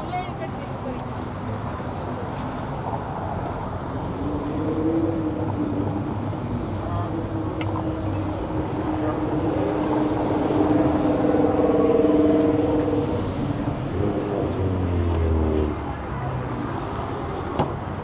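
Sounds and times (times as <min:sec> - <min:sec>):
steady traffic noise: 0:00.0 - 0:18.0
vehicle engine passing by: 0:03.8 - 0:18.0.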